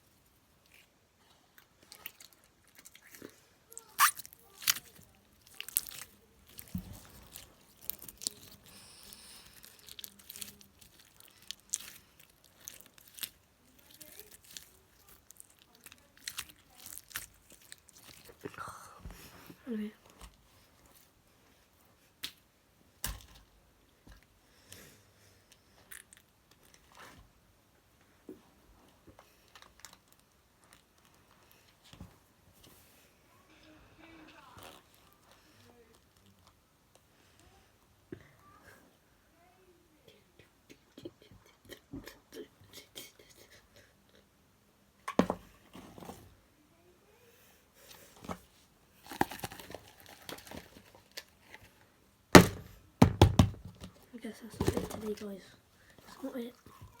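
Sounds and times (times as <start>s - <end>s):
hands handling slime: 1.8s - 19.2s, 48.0s - 51.8s, 53.4s - 57.0s.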